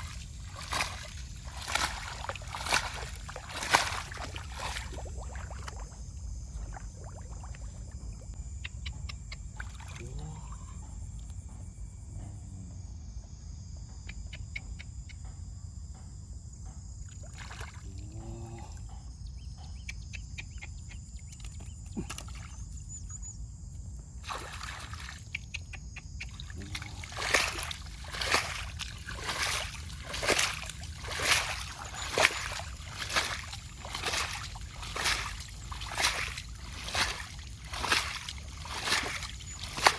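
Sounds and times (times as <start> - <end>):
water sloshing and trickling: 0.0 - 8.4, 9.3 - 10.2, 17.1 - 17.9, 20.9 - 39.9
water splashes: 0.0 - 8.4, 9.6 - 10.0, 17.2 - 17.8, 24.2 - 39.9.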